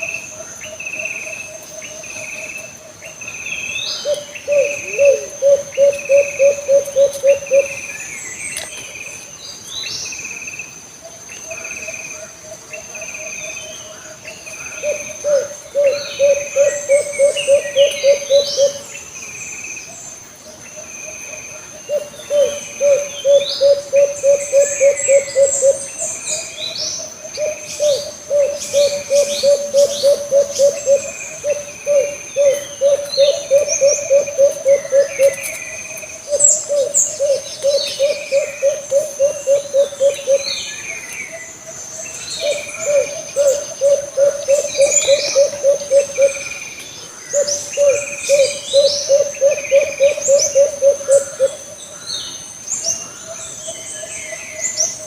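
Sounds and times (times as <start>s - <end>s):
birds chirping: 0.0s - 55.0s
high insect drone: 0.0s - 55.0s
dove hooting: 4.0s - 7.9s, 14.7s - 19.0s, 21.6s - 26.5s, 27.1s - 40.7s, 42.4s - 46.6s, 47.3s - 51.8s.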